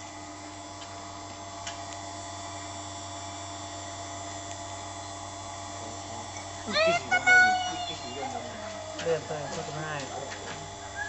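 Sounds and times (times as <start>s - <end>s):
grinding machine hum: 2.2s - 11.0s.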